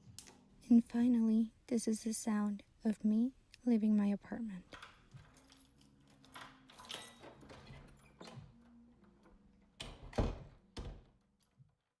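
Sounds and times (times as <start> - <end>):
door latch clicks and rattles: 4.7 - 11.6
door closing thud: 9.8 - 11.2.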